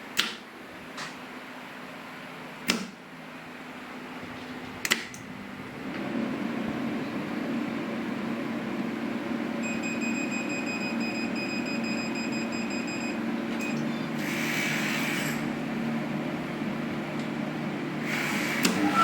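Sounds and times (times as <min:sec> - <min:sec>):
click: 0:04.8 - 0:05.2
machine humming: 0:04.8 - 0:19.0.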